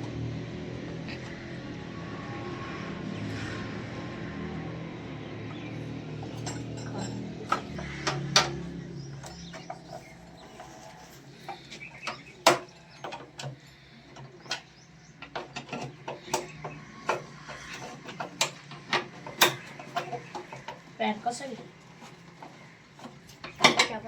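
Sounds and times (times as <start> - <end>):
low hum: 0.0 - 13.0
clicks and knocks of repair work: 5.5 - 24.0.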